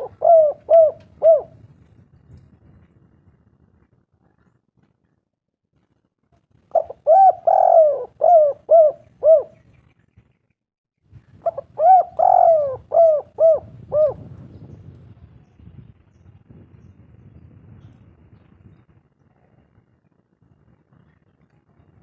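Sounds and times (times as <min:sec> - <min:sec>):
dove cooing: 0:00.0 - 0:01.6, 0:06.7 - 0:09.6, 0:11.4 - 0:14.3.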